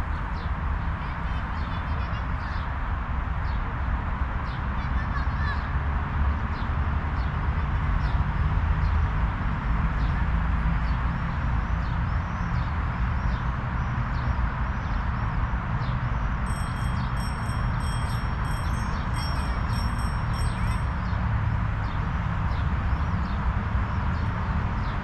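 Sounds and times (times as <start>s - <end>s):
small birds chirping: 15.8s - 25.0s
high pulsing ringing tone: 16.5s - 21.8s.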